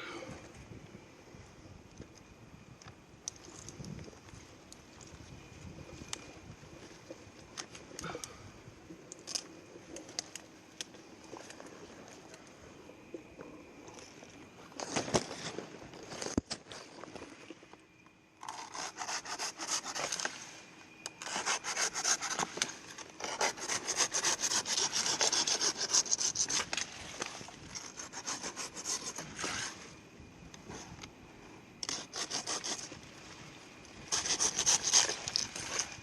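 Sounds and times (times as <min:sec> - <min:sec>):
hand saw cutting palm fronds: 0:18.4 - 0:20.4, 0:21.2 - 0:26.8, 0:27.8 - 0:29.8, 0:31.8 - 0:32.9, 0:34.1 - 0:35.3.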